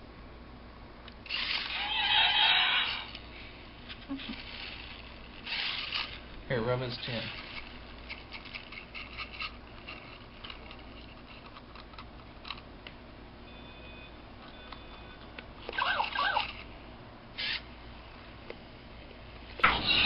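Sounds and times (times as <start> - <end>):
toy dinosaur electronic growl: 1.4 - 3.1
faint electronic beeps: 13.4 - 15.3.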